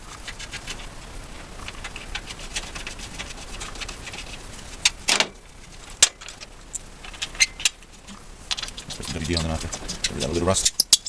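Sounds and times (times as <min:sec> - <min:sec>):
bolts and hand tools rattling: 0:04.8 - 0:11.0.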